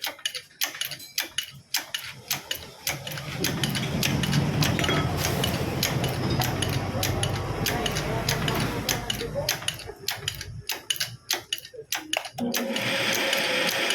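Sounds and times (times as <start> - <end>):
ratchet wrench clicking: 0.0 - 13.9
power tool rattling: 2.6 - 10.4, 12.4 - 13.9.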